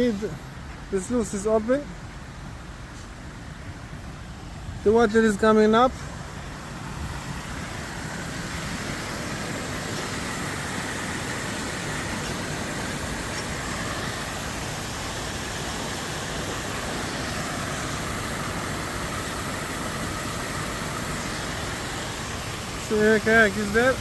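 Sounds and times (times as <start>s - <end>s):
water rushing through sluices: 5.9s - 24.0s.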